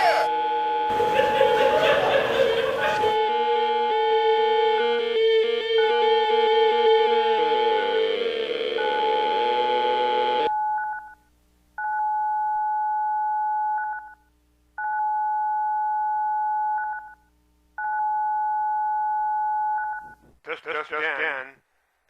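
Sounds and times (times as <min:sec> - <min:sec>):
music: 0:02.6 - 0:09.1.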